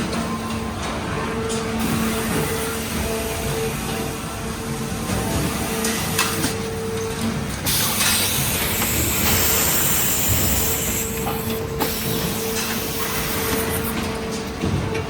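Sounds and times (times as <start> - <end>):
industrial machine humming: 0.0 - 15.0
compressed air hiss: 7.7 - 13.8.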